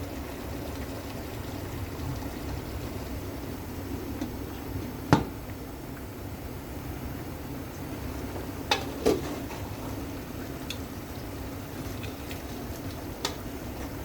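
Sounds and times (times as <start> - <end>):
gravy simmering in a pan: 0.0 - 14.0.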